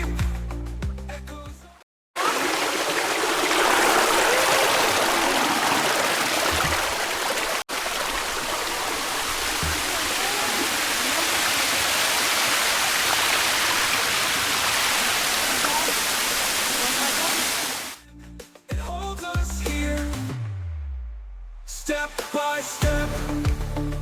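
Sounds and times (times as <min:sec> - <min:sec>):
rushing mountain stream: 0:02.2 - 0:18.0.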